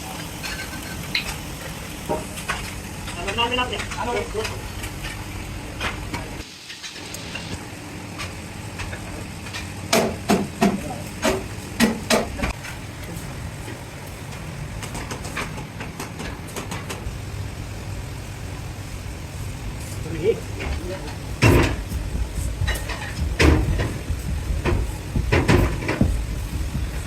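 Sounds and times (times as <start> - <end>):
low machinery hum: 10.8 - 27.0
sharp knocks: 21.4 - 26.8.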